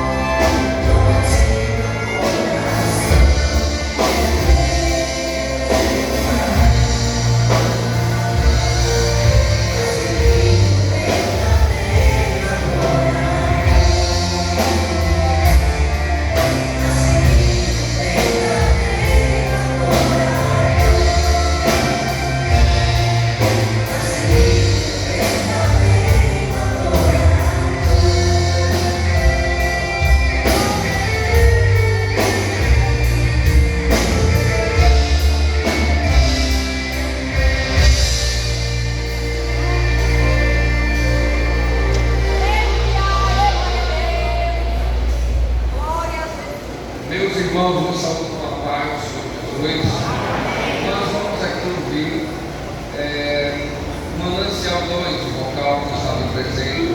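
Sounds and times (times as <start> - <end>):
group singing worship song: 0.0 - 45.2
live band with drums: 0.0 - 47.1.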